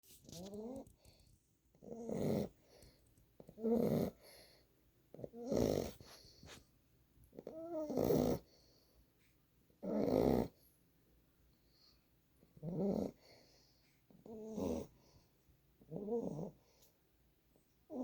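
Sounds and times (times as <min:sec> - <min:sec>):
puppy snoring: 0:00.3 - 0:06.7, 0:07.3 - 0:08.8, 0:09.8 - 0:10.7, 0:12.4 - 0:15.2, 0:15.8 - 0:16.8.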